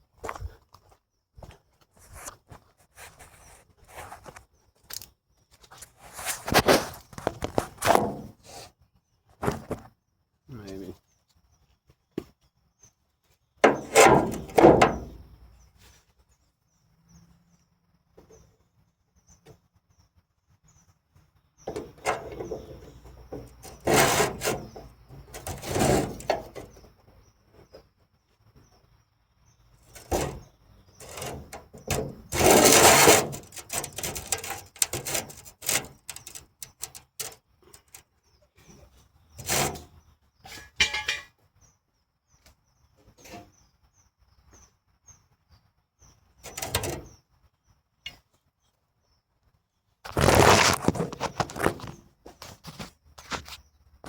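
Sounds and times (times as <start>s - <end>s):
tools and metal clattering: 6.5s - 8.4s, 13.6s - 15.3s, 21.7s - 26.9s, 29.8s - 38.0s, 39.4s - 41.4s, 46.5s - 47.1s.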